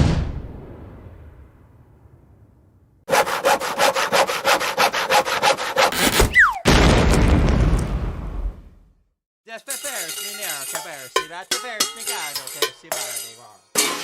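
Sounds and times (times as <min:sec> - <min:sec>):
loud crash: 0:00.0 - 0:02.5, 0:06.6 - 0:08.7
cartoon hand saw cutting wood: 0:03.1 - 0:06.4
falling whistle: 0:06.3 - 0:06.7.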